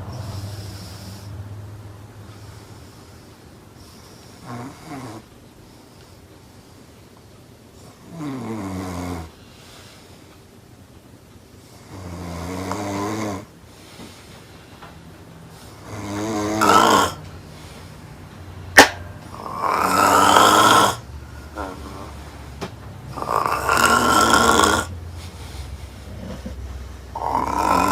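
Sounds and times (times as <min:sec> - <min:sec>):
woman snoring loudly: 0:04.4 - 0:05.3, 0:08.0 - 0:09.4, 0:11.8 - 0:13.5, 0:15.7 - 0:17.3, 0:19.3 - 0:22.2, 0:23.1 - 0:25.0, 0:26.0 - 0:27.9.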